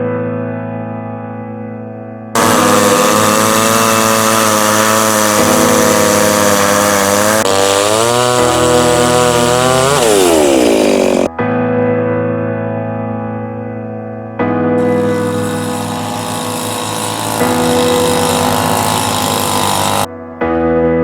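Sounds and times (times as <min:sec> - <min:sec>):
chainsaw revving: 0:02.4 - 0:11.3, 0:14.8 - 0:20.1.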